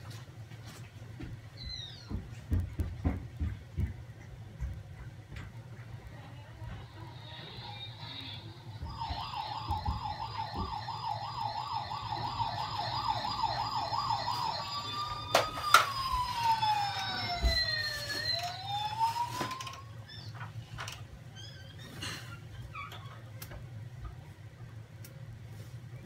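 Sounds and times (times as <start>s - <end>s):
emergency vehicle siren: 7.4s - 20.0s.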